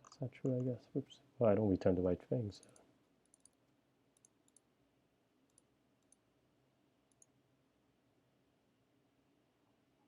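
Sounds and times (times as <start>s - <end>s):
computer keys clicking: 2.6s - 3.6s, 4.2s - 4.7s, 5.5s - 6.2s, 7.1s - 7.4s.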